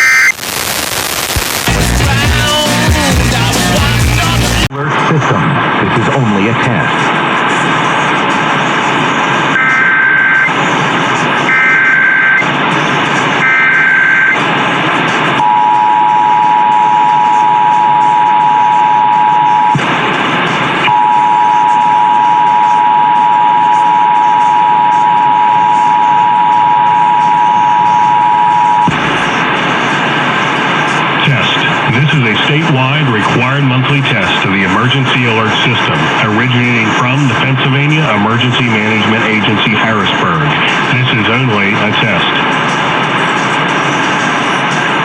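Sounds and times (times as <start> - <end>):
two-tone attention signal: 0.0 - 0.4, 13.4 - 14.4, 15.4 - 19.8, 20.9 - 28.9
digital header tone bursts: 0.0 - 0.6
radio hiss: 0.0 - 45.0.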